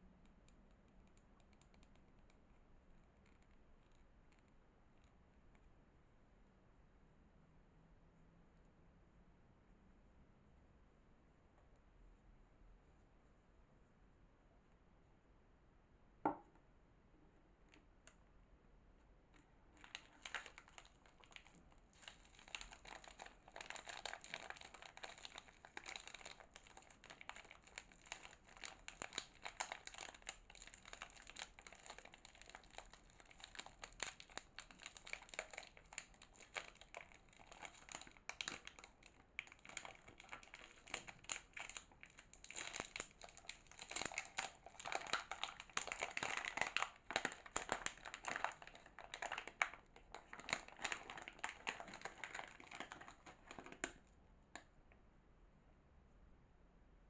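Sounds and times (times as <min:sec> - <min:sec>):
packaging crinkling and tearing: 0:19.7 - 0:54.0.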